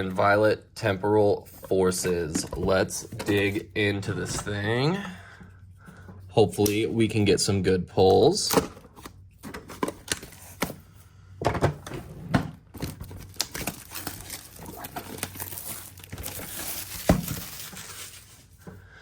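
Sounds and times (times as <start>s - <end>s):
plastic wrapping crinkling: 12.8s - 18.5s.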